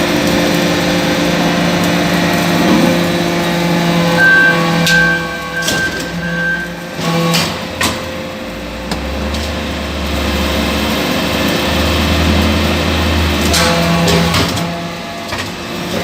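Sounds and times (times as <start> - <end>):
deep low drone: 0.0 - 5.4
machine hum: 0.0 - 14.9.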